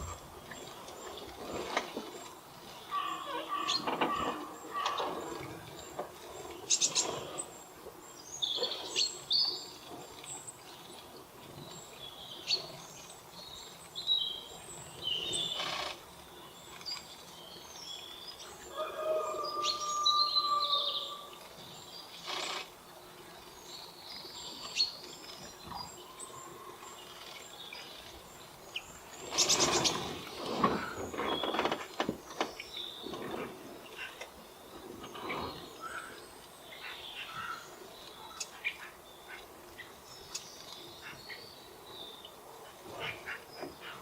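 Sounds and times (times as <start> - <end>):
small birds chirping: 19.4 - 44.0.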